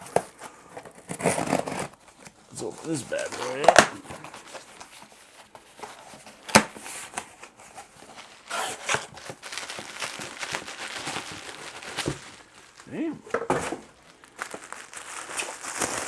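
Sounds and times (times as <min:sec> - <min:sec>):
wrapping rustling and crinkling: 0:00.0 - 0:16.0.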